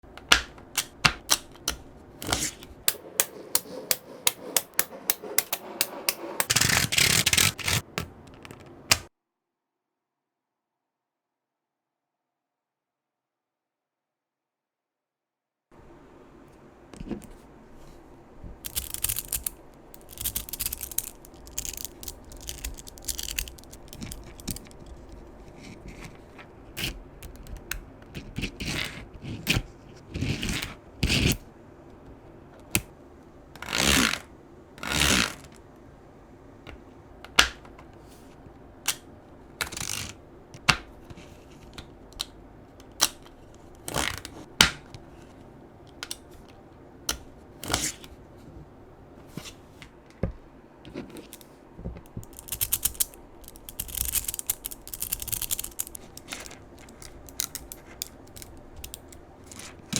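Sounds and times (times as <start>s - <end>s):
magnetic balls snapping together: 0.1s - 9.1s, 18.6s - 24.8s, 52.1s - 59.7s
magnetic balls scraping: 2.2s - 8.8s, 18.6s - 26.2s, 52.2s - 59.9s.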